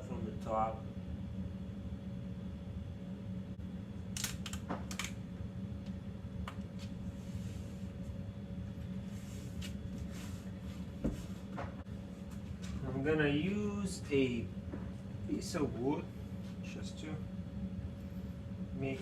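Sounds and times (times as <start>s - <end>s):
steady low hum: 0.0s - 19.0s
vinyl film clicks and crackles: 4.1s - 5.2s.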